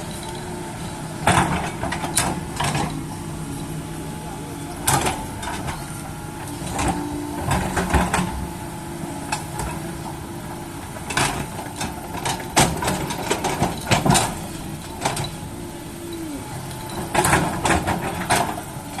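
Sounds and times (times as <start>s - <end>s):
excavator diesel engine running: 0.0s - 19.0s.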